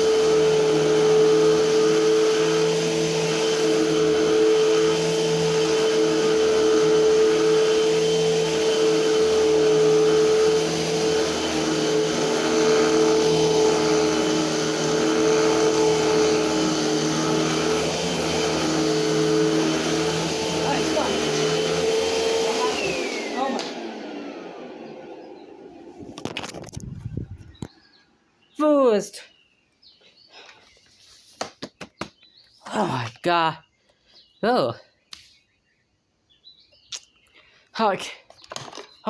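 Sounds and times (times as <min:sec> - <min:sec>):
vacuum cleaner motor whine: 0:00.0 - 0:28.0.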